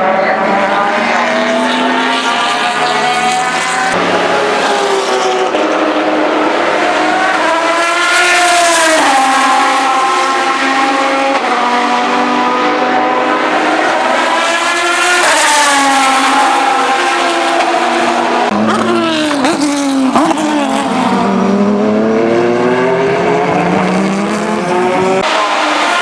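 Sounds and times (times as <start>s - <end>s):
race car engine revving: 0.0s - 26.0s.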